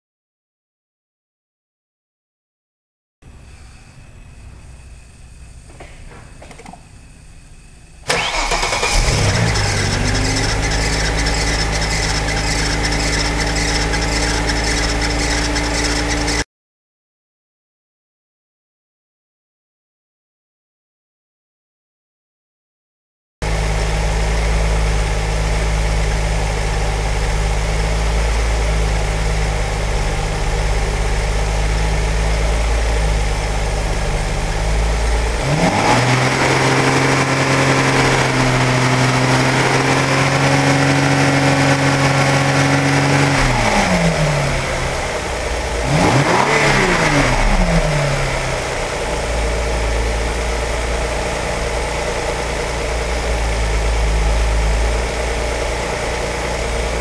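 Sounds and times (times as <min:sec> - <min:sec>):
car engine idling and revving: 0:08.1 - 0:16.4, 0:23.4 - 0:57.0.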